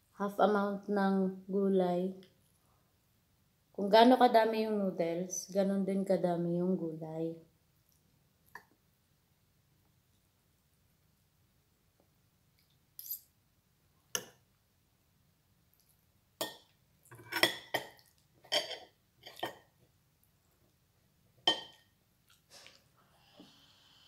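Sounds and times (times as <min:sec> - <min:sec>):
cutlery clinking on plate: 0:16.4 - 0:19.7, 0:21.5 - 0:21.9.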